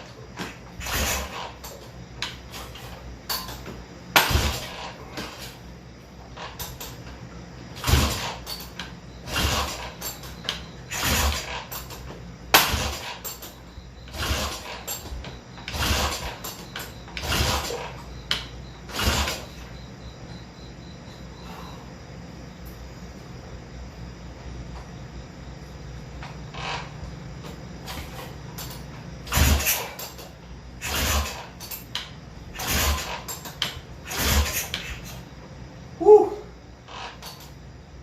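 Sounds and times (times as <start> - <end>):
engine turning over: 0.0 - 1.9, 2.5 - 5.6, 7.7 - 19.7, 27.8 - 35.2
motorcycle kickstart clunk: 0.0 - 5.6, 6.3 - 7.2, 7.8 - 19.7, 26.2 - 35.2
steady low hum: 0.0 - 38.0.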